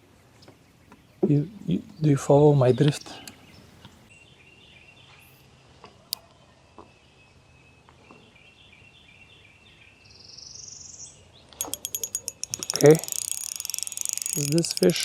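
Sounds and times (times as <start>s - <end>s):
sharp click: 11.6s - 15.0s.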